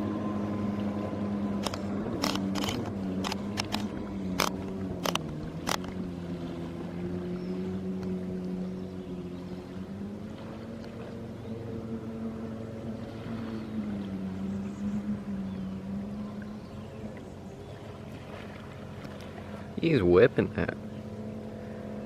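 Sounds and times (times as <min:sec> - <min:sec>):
jet ski engine running: 0:00.0 - 0:22.0
sharp clicks: 0:01.6 - 0:06.0.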